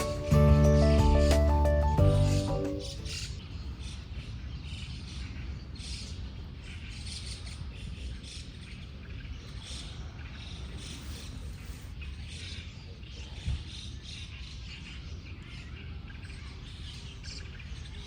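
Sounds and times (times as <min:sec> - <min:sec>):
background music: 0:00.0 - 0:03.2.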